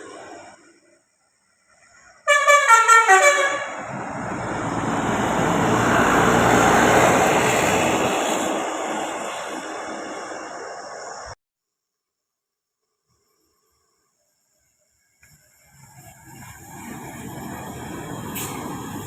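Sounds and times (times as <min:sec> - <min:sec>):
bus engine and tyres passing: 0:00.0 - 0:11.4, 0:15.2 - 0:19.0
bus musical horn: 0:02.2 - 0:07.7.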